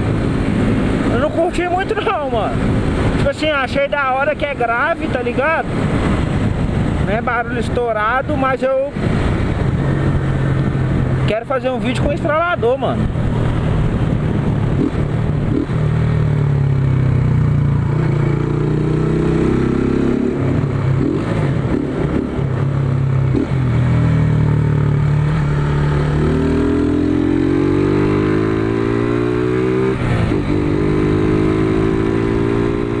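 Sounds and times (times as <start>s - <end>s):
motorcycle engine accelerating: 12.4s - 33.0s.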